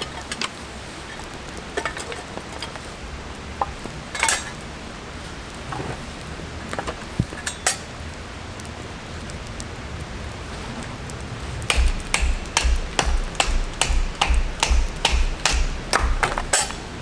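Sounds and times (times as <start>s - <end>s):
sharp knocks with dull thuds: 11.7s - 17.0s.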